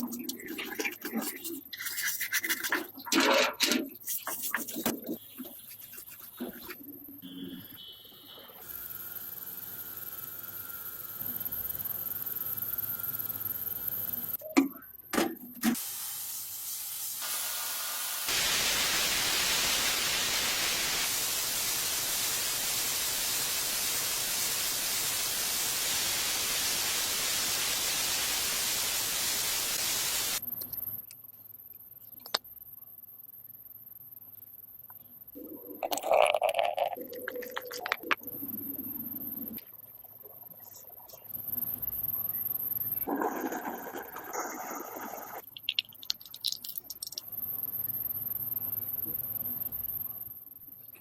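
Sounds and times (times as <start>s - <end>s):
spraying hiss: 15.8s - 30.4s.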